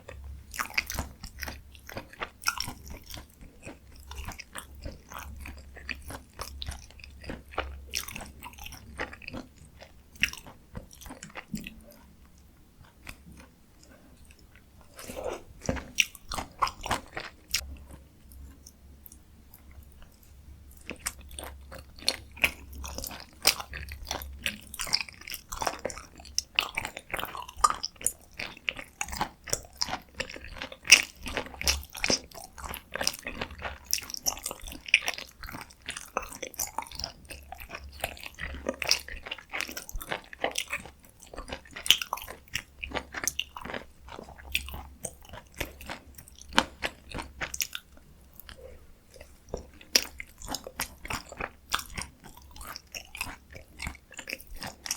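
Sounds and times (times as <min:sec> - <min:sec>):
chewing and mouth sounds: 0:00.0 - 0:54.9.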